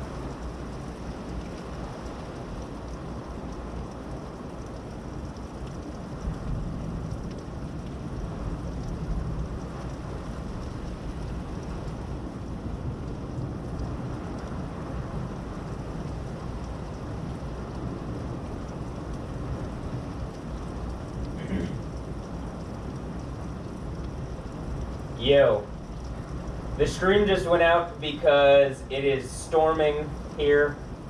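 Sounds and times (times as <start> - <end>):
heavy rain falling: 0.0 - 31.0
low thunder rumble: 0.0 - 31.0.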